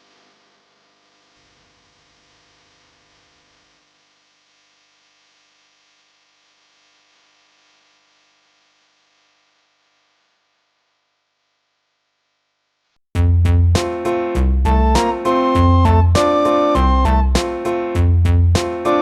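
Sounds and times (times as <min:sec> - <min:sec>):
faint hum and hiss: 0:00.0 - 0:13.0.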